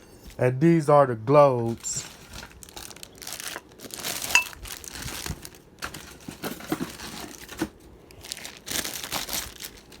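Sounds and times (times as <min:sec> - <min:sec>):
packing material crinkling: 0:01.6 - 0:10.0
glass clink: 0:04.3 - 0:04.6.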